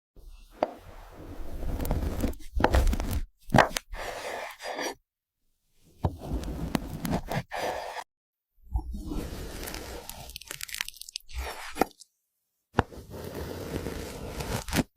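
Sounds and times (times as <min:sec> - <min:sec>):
cake being cut crunching: 0:09.6 - 0:12.0.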